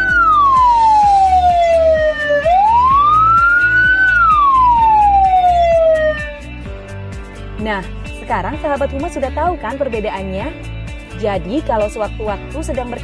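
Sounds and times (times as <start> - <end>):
ambulance siren slow wail: 0.0 - 6.4.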